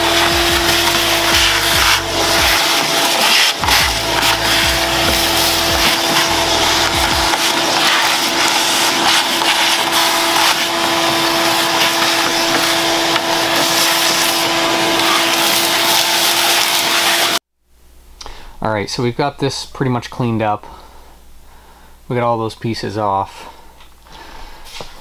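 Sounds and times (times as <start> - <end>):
hissing noise: 0.0 - 17.4
power tool motor running: 0.0 - 17.4.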